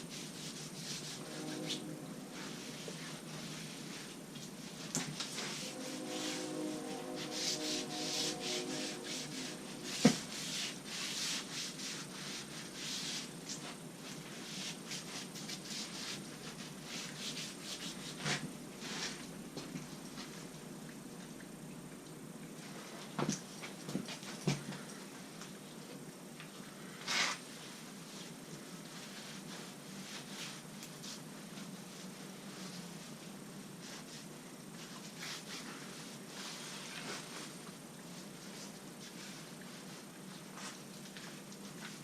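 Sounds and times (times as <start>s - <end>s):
rubbing strokes: 0.0s - 19.2s.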